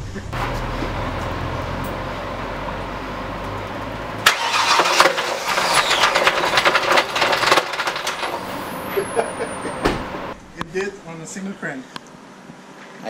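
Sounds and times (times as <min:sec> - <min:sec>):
engine loud rapid knocking: 0:04.2 - 0:09.6.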